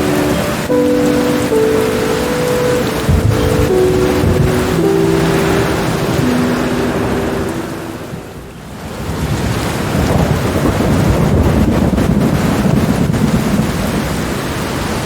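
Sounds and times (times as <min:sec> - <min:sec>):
soft sustained musical notes: 0:00.0 - 0:08.8
rolling thunder: 0:00.0 - 0:14.8
heavy rain: 0:00.0 - 0:15.0.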